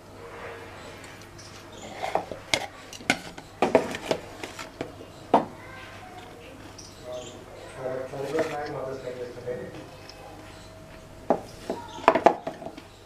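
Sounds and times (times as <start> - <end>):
low steady hum: 0.0 - 13.0
dishes and utensils clinking: 1.0 - 6.9.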